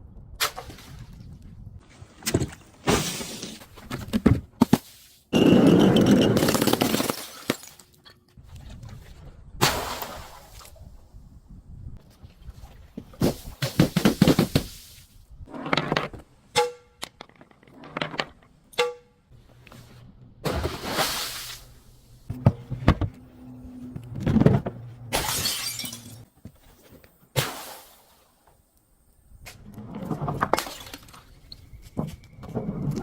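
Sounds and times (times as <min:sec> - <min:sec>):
glass bottles smashing: 0:05.4 - 0:07.9, 0:25.1 - 0:26.3.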